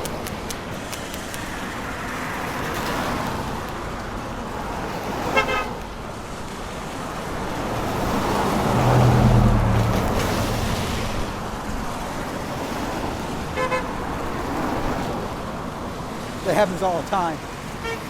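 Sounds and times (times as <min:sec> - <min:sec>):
cars driving past: 0:00.1 - 0:18.0
car horn toot: 0:05.3 - 0:05.8, 0:13.6 - 0:14.0, 0:17.8 - 0:18.0
low vehicle engine hum: 0:06.9 - 0:11.6.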